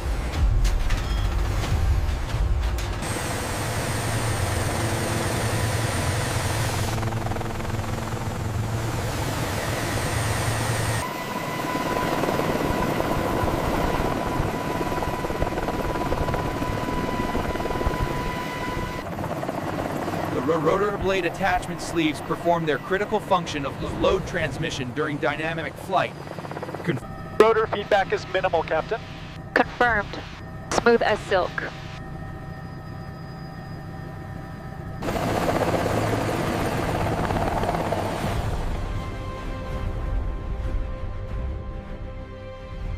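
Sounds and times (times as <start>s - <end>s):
turbine whine: 0.0s - 39.7s
helicopter rotor and engine: 0.0s - 40.6s.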